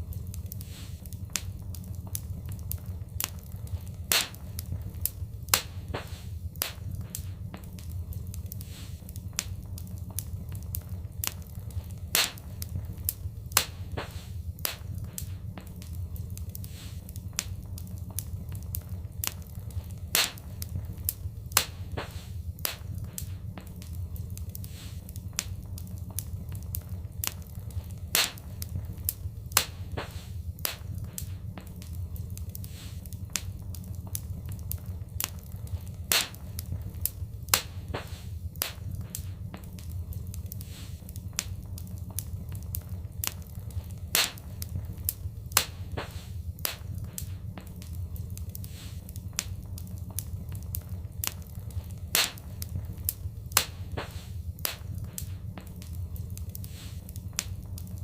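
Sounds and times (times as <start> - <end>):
steady low rumble: 0.0 - 58.0
wood fire crackling: 0.0 - 58.0
sharp pops: 4.1 - 4.7, 5.5 - 7.9, 12.1 - 12.6, 13.5 - 15.9, 20.1 - 20.6, 21.5 - 23.9, 28.1 - 28.6, 29.5 - 31.9, 36.1 - 36.7, 37.5 - 39.9, 44.1 - 44.7, 45.5 - 47.9, 52.1 - 52.7, 53.5 - 55.9.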